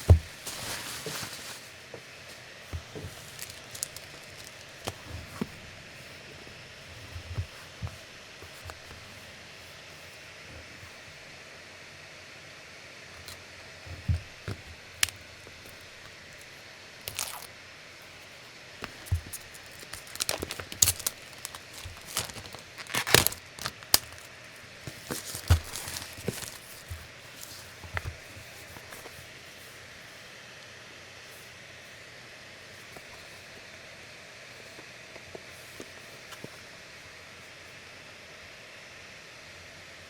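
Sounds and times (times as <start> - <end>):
packaging crinkling and tearing: 0.0 - 1.7, 2.8 - 5.1, 14.6 - 17.5, 18.8 - 28.2
packaging clicks and taps: 2.8 - 5.5, 17.1 - 17.5, 18.8 - 28.2.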